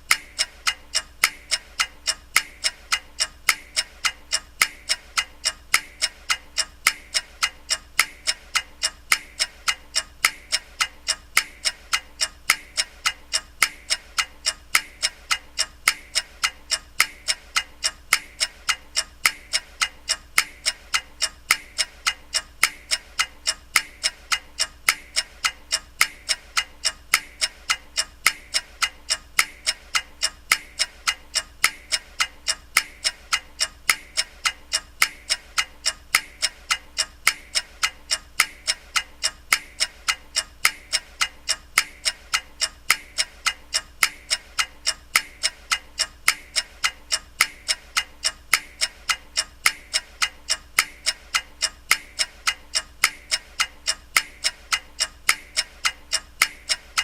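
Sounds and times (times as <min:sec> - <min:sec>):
clock ticking: 0:00.0 - 0:57.0.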